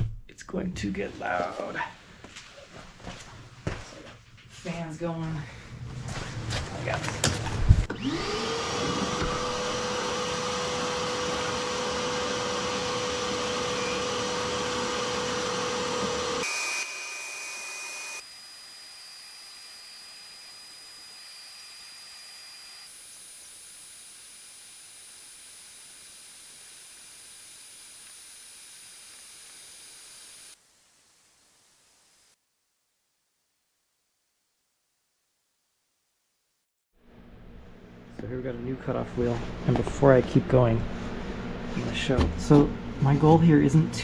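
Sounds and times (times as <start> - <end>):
high-speed electric motor running: 7.9 - 32.4
faint high whistle: 13.6 - 14.2.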